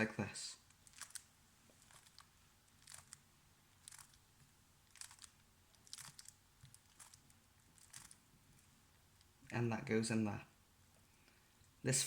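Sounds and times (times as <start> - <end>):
puzzle cube plastic clicking: 0.7 - 3.2, 3.8 - 4.2, 4.8 - 8.2.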